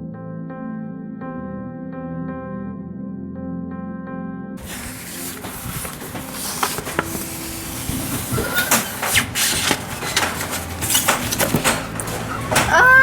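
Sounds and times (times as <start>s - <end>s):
paper poster rustling and crinkling: 4.6s - 13.0s.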